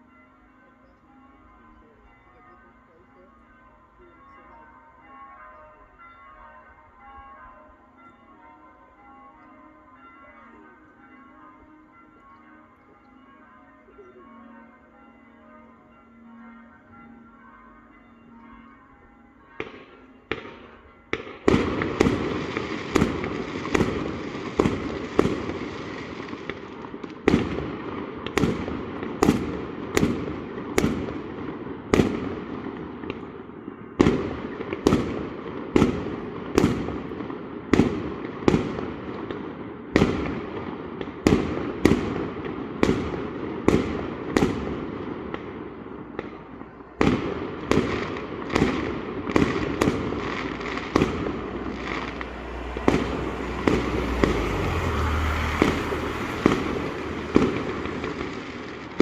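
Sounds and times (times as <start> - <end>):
fireworks bangs: 19.6 - 33.3, 34.0 - 59.0
fireworks crackling: 19.7 - 33.2, 34.0 - 59.0.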